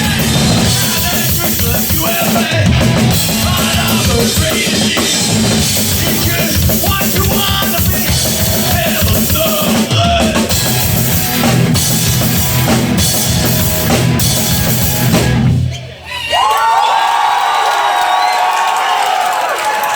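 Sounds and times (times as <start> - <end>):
audience shouting and cheering: 0.0 - 10.6, 12.1 - 19.9
punk band playing live: 0.0 - 15.8.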